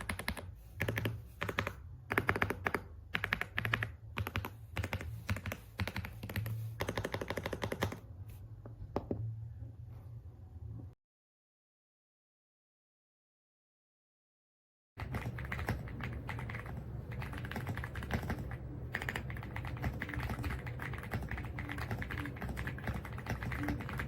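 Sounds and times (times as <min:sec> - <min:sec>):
mechanical keyboard typing: 0:00.0 - 0:08.0, 0:15.0 - 0:24.0
steady low hum: 0:15.0 - 0:24.0.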